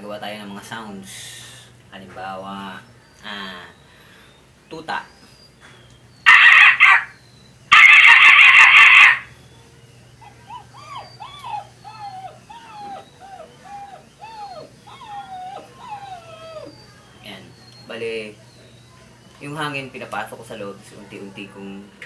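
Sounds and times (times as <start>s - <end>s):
man imitating puppy whimpers: 10.2s - 17.8s.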